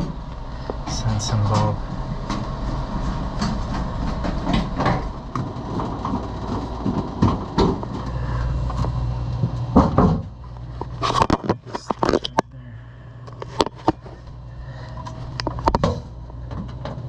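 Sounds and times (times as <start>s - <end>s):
steady low hum: 0.0s - 17.0s
clicking and scraping of hand work: 10.8s - 12.4s.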